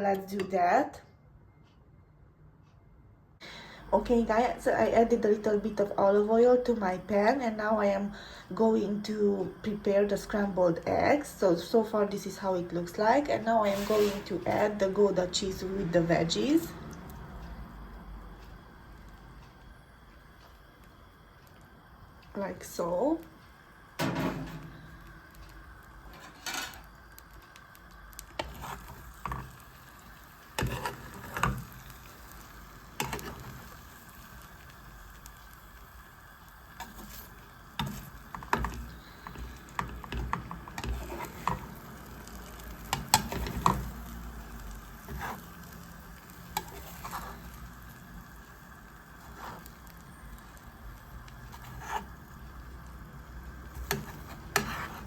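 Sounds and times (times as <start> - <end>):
eggs sizzling in frying pan: 3.5 - 55.0
utensil scraping pan: 13.4 - 14.7, 28.4 - 29.6, 30.6 - 31.8, 36.8 - 41.8, 45.0 - 45.6, 46.5 - 47.6, 51.4 - 52.2, 53.8 - 55.0.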